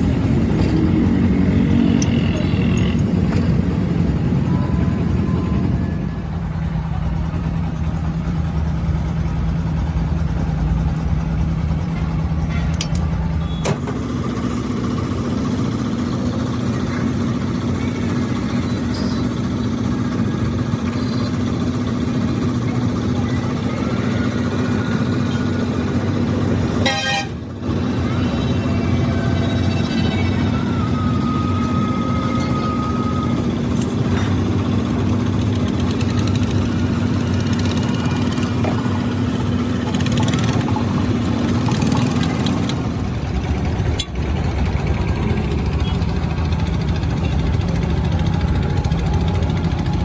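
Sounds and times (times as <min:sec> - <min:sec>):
steady mechanical hum: 0:00.0 - 0:50.0
loud horn-like burst: 0:26.8 - 0:27.4.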